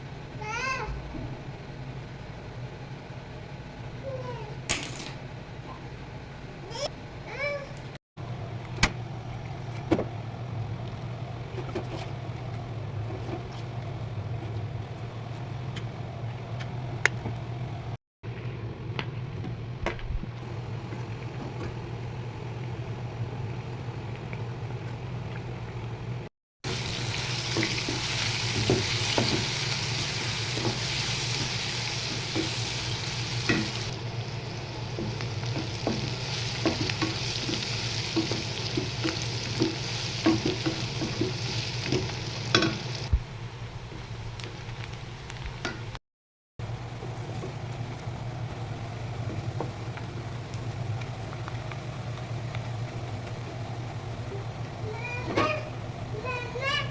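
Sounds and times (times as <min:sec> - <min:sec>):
food sizzling in a pan: 0:26.6 - 0:43.2.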